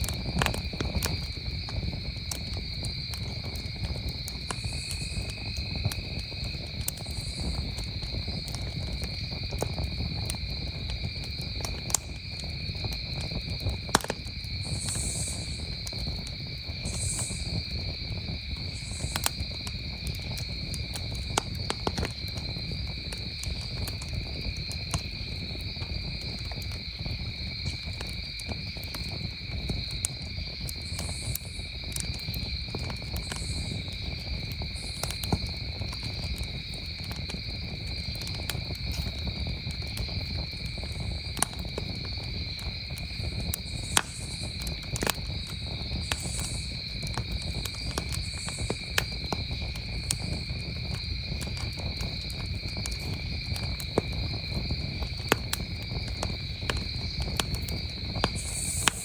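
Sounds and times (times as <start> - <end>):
campfire crackling and popping: 0.0 - 59.0
crickets chirring: 0.0 - 59.0
high insect buzz: 4.6 - 5.4, 14.6 - 15.8, 16.8 - 17.6, 18.6 - 19.4, 45.4 - 46.9, 58.3 - 59.0.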